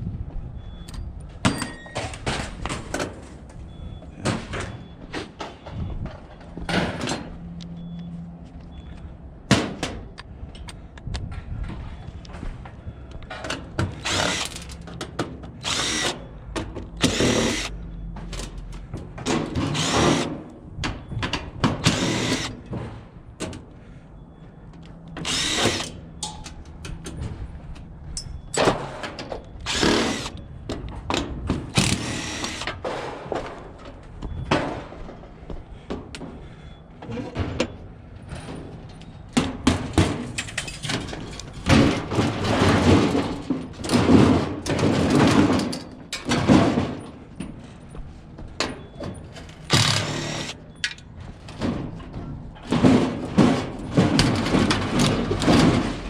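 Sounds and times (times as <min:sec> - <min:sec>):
power drill running: 0:14.0 - 0:14.8, 0:15.6 - 0:16.2, 0:17.0 - 0:17.7, 0:19.7 - 0:20.3, 0:21.8 - 0:22.6, 0:25.2 - 0:25.9, 0:29.6 - 0:30.4, 0:31.8 - 0:32.7, 0:49.7 - 0:50.6.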